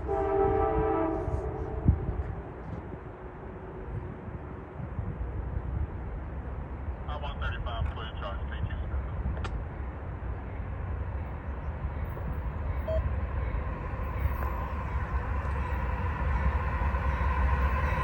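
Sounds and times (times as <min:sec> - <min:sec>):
distant locomotive horn: 0:00.0 - 0:02.8, 0:12.6 - 0:18.0
wind buffeting microphone: 0:00.0 - 0:07.0, 0:11.0 - 0:18.0
freight train rumble: 0:00.0 - 0:18.0.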